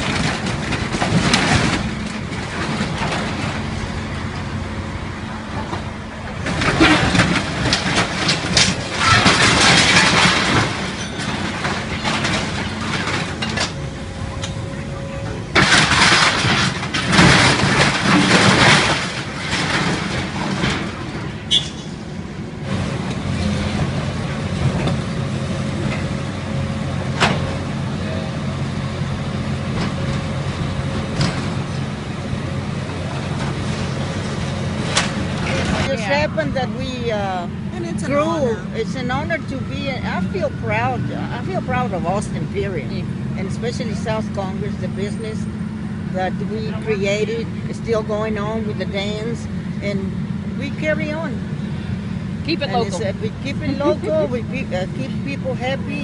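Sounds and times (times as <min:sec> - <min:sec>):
building crunching and crashing: 0:00.0 - 0:14.7, 0:15.3 - 0:21.5, 0:22.6 - 0:37.1
diesel engine of demolition machinery: 0:00.0 - 0:56.0.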